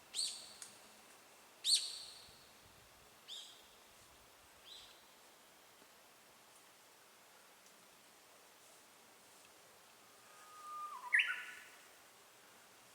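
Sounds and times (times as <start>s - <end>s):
songbird calling: 0.1s - 0.6s, 1.6s - 2.3s, 10.5s - 11.8s.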